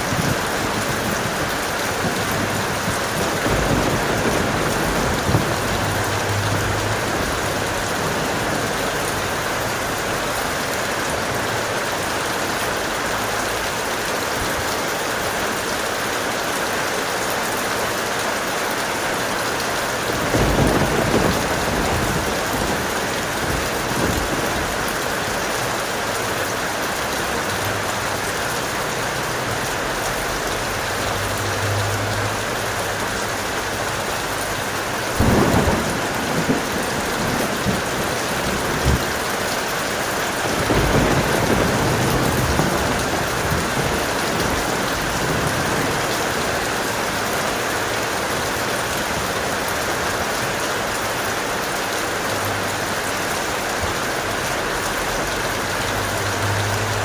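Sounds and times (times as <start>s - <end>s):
thunder crack and rumble: 0.0s - 10.5s, 20.0s - 26.1s, 34.8s - 47.2s
heavy rain: 0.0s - 57.0s.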